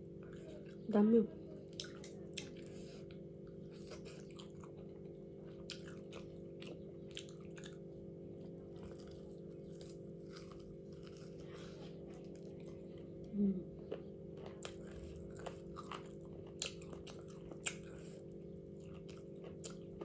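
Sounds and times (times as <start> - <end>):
person chewing crunchy food: 1.7 - 20.0.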